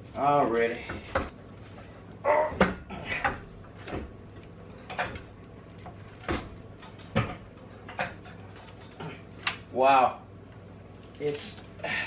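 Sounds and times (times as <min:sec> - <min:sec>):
person grunting: 0:02.2 - 0:03.4.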